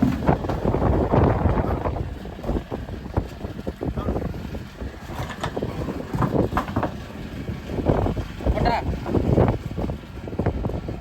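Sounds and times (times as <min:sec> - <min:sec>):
low rumble of boat: 0:00.0 - 0:11.0
wind buffeting microphone: 0:00.0 - 0:11.0.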